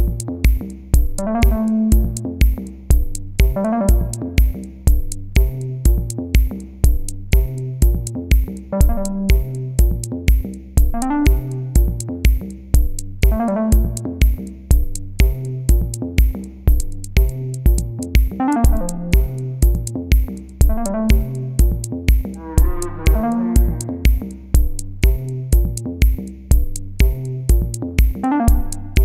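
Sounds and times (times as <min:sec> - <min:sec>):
drum machine beat: 0:00.0 - 0:29.0
synthesizer notes: 0:01.2 - 0:02.2, 0:03.4 - 0:04.4, 0:08.8 - 0:09.6, 0:11.0 - 0:11.8, 0:13.2 - 0:14.2, 0:18.4 - 0:19.6, 0:20.7 - 0:21.6, 0:22.4 - 0:24.3, 0:28.2 - 0:29.0.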